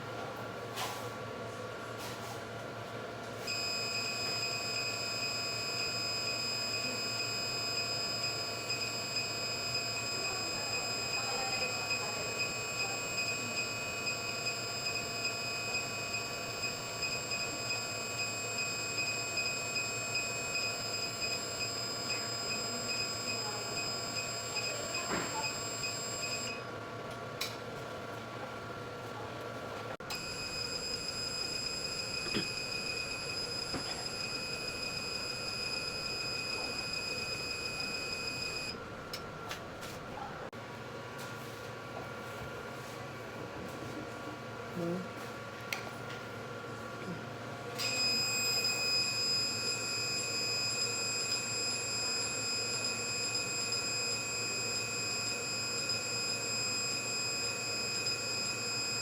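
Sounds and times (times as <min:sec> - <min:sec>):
high-pitched electronic machine whine: 0:03.5 - 0:26.6, 0:30.1 - 0:38.8
soft regular pulse: 0:30.1 - 0:39.2.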